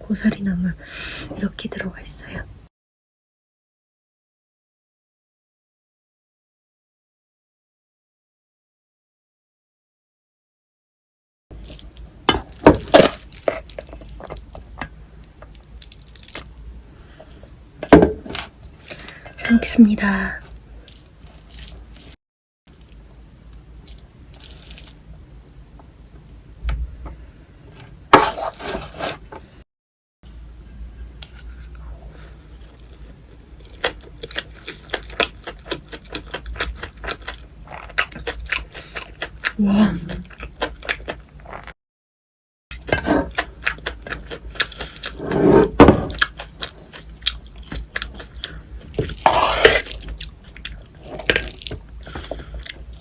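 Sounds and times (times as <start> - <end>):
spoon squelching through food: 23.8 - 25.0, 48.9 - 53.0.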